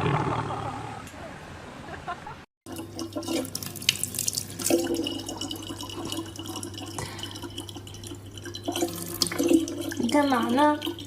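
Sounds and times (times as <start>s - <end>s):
small splashes and clicks: 2.7s - 11.0s
water running from tap: 2.7s - 11.0s.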